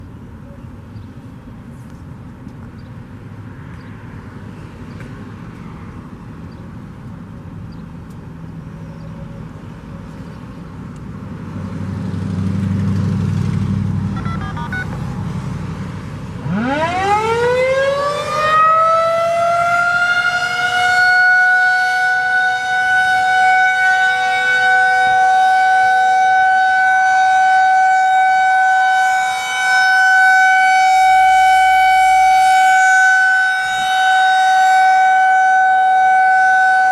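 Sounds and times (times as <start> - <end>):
warning siren winding up: 14.2 - 15.2, 16.4 - 36.9.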